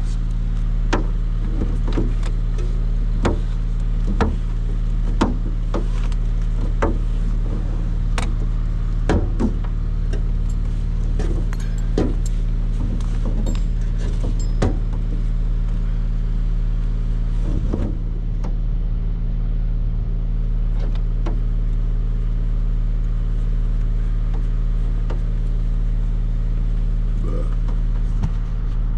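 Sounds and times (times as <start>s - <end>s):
engine running steadily: 0.0s - 28.9s
knocks and clanks: 8.1s - 15.3s.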